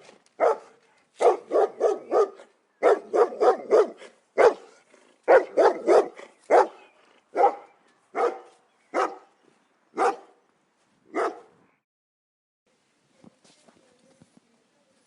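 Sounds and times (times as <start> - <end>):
dog barking: 0.4 - 9.3, 10.0 - 10.4, 11.1 - 11.6.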